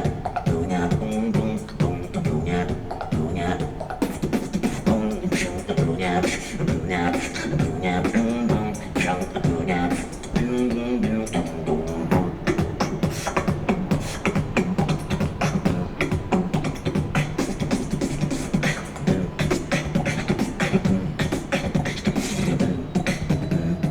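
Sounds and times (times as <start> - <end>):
beatboxing vocal percussion: 0.0 - 23.9.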